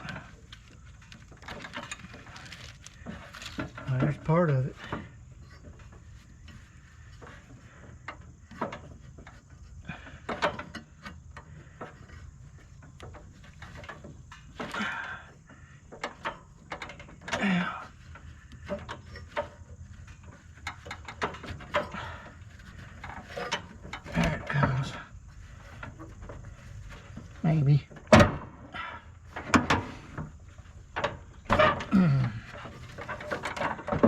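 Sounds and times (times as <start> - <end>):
rustling and tearing: 0.4 - 3.7.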